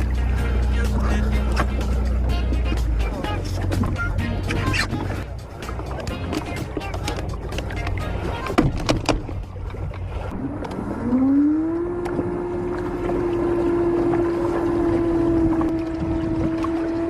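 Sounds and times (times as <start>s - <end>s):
small boat motor running: 0.0s - 17.0s
wind on microphone: 8.3s - 17.0s.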